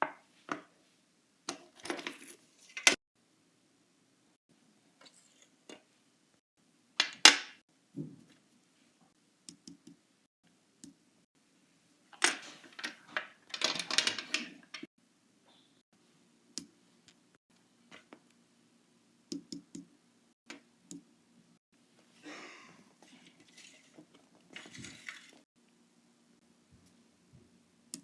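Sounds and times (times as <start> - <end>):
clattering and rustling: 12.2 - 14.9, 23.0 - 25.5.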